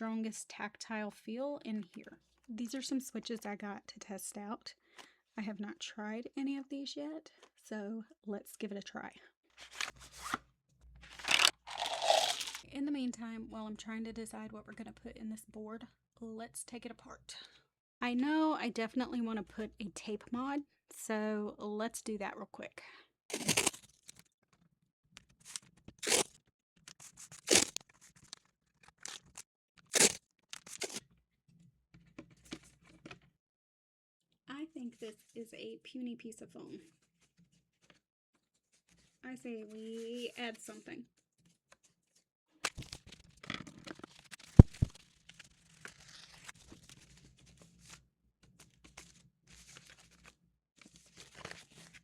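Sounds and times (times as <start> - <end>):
tape ripping off a roll: 11.1 - 12.6, 23.3 - 23.9, 25.5 - 26.3, 27.3 - 27.8, 29.0 - 31.0, 44.4 - 45.0
tape crinkling and tapping: 23.3 - 31.0, 42.6 - 47.6.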